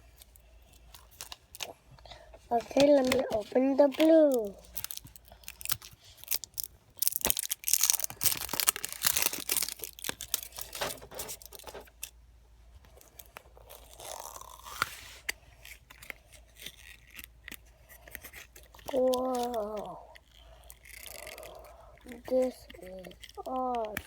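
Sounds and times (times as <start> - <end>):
package tearing and crackling: 0.9 - 1.8, 2.6 - 12.1, 13.0 - 24.0
packaging rustle: 2.4 - 12.1.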